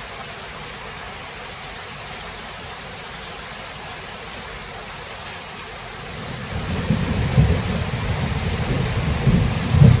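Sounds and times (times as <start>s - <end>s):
steady rain hiss: 0.0s - 10.0s
low rolling thunder: 6.3s - 10.0s.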